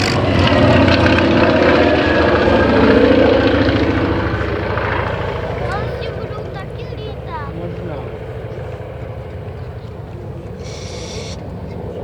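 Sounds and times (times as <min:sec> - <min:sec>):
propeller plane flying past: 0:00.0 - 0:12.0.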